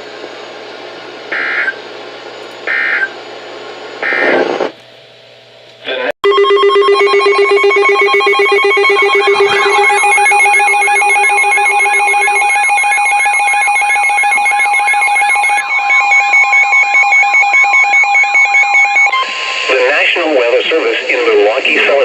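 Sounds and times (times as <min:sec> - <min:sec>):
warbling alarm tone: 0:01.3 - 0:01.8, 0:02.7 - 0:03.1, 0:04.0 - 0:04.4, 0:06.2 - 0:19.8
pulsing beeps: 0:02.7 - 0:03.1, 0:06.2 - 0:19.4
low tone: 0:06.2 - 0:13.3.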